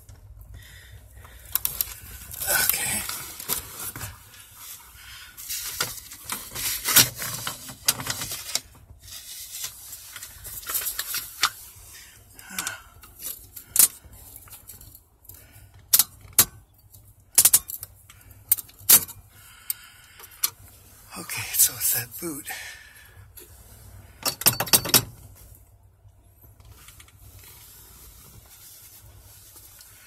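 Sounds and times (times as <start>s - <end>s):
small metal parts clicking and clinking: 15.9s - 19.2s.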